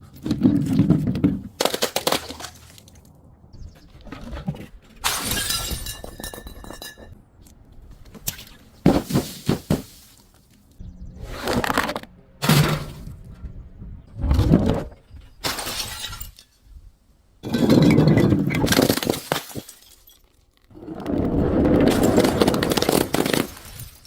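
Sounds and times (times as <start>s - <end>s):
glass bottle shattering: 5.0s - 7.2s, 15.4s - 16.6s, 17.4s - 20.4s.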